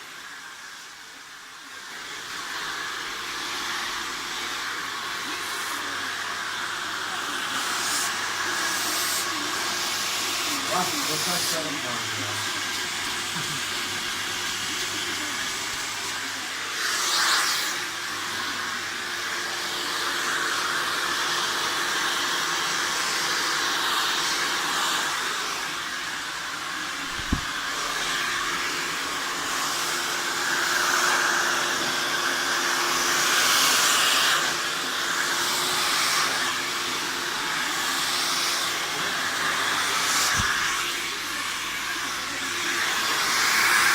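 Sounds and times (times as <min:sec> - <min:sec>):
hair dryer blowing: 0:00.0 - 0:43.9
short thump: 0:27.1 - 0:27.5.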